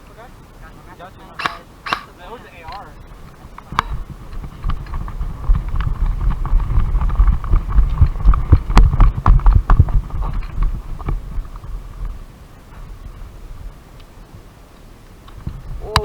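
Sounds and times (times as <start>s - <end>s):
sharp clicks: 1.4s - 2.8s.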